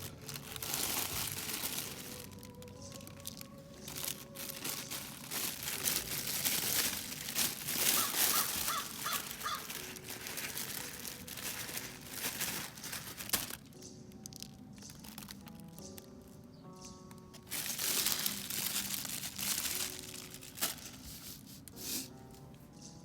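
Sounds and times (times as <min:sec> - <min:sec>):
crackling crunching noise: 0:00.0 - 0:22.3
bird calling: 0:07.9 - 0:09.9.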